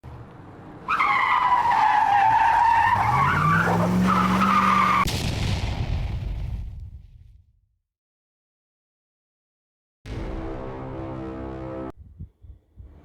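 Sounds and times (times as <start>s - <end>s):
car tyres squealing: 0.7s - 5.1s
car engine revving: 2.8s - 5.0s.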